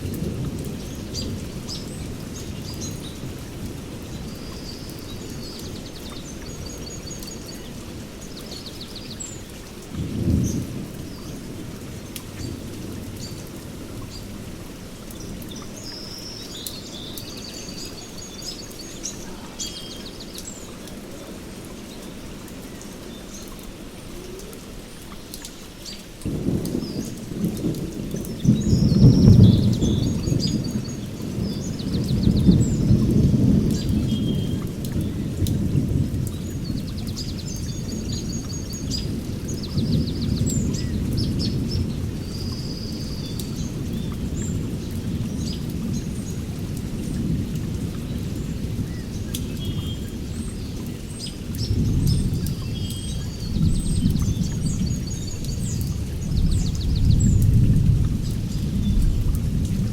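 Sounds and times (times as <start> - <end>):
heavy rain: 0.0 - 59.9
thunder rumbling: 10.0 - 15.4, 26.3 - 50.6, 51.6 - 59.9.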